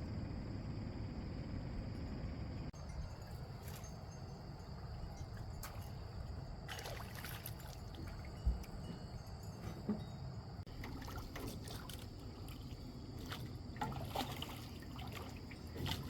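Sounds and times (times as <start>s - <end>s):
low rumble of wind: 0.0s - 16.0s
water splashing around a boat: 2.9s - 16.0s.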